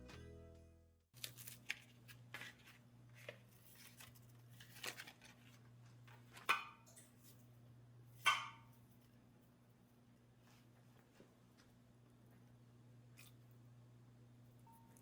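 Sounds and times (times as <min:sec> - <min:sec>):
background music: 0:00.0 - 0:01.0.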